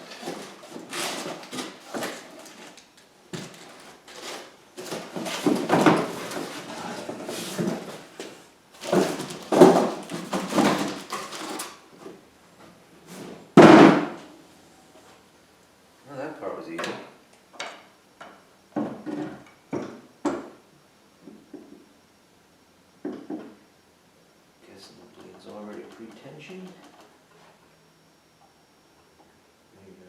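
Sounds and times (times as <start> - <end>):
packaging scraping and shuffling: 0.0 - 12.2.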